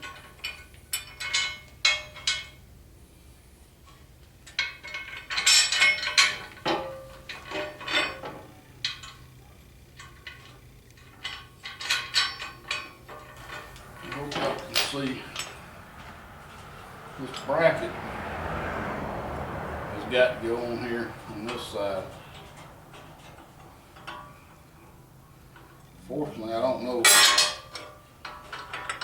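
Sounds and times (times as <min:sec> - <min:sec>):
metal bolts clinking and rattling: 0:00.0 - 0:02.6, 0:03.9 - 0:17.9, 0:20.0 - 0:26.0, 0:26.6 - 0:29.0
faint steady hum: 0:00.0 - 0:17.8.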